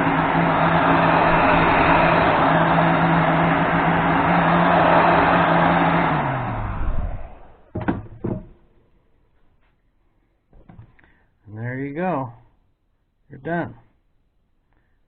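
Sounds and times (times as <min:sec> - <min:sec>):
heat gun blowing: 0:00.0 - 0:07.7
fan winding down hum: 0:00.0 - 0:07.8.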